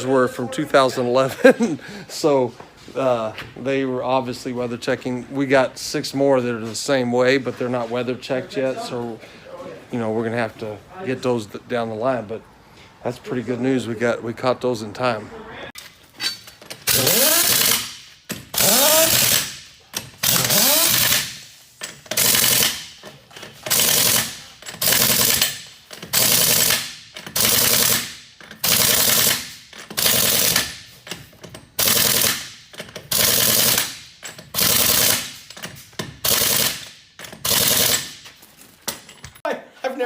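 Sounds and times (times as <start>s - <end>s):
impact wrench bursts: 15.8s - 39.2s.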